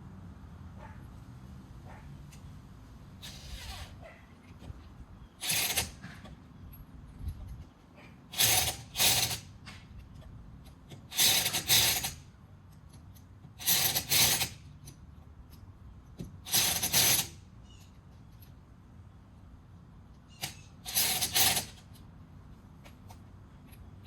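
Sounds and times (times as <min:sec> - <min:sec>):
impact wrench bursts: 0:05.3 - 0:06.4, 0:08.3 - 0:09.9, 0:10.9 - 0:12.3, 0:13.5 - 0:14.9, 0:16.4 - 0:17.8, 0:20.3 - 0:21.9.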